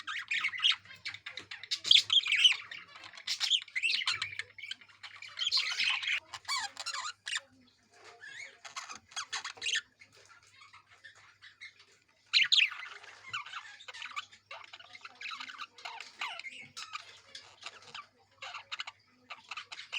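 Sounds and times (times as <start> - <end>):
budgerigars chattering and squawking: 0.0 - 19.9.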